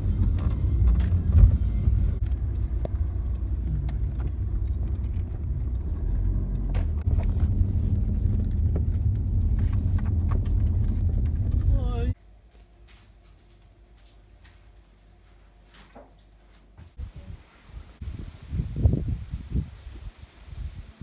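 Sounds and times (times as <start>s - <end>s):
car engine and road rumble: 0.0s - 12.2s
small clicks and rattles: 2.2s - 6.6s.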